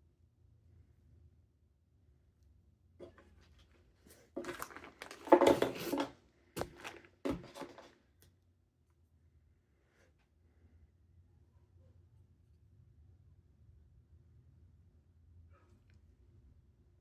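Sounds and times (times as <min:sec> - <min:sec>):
rustling scrapes: 0:03.0 - 0:07.9
clicks and knocks of handling: 0:04.4 - 0:07.9.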